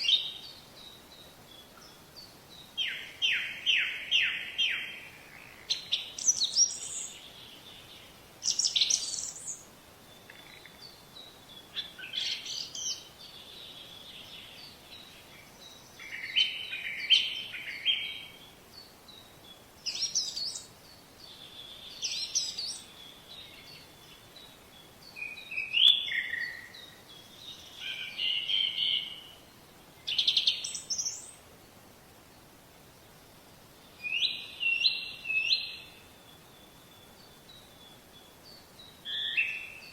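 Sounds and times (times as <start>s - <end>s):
birds chirping and singing: 0.0s - 29.5s, 30.1s - 31.4s.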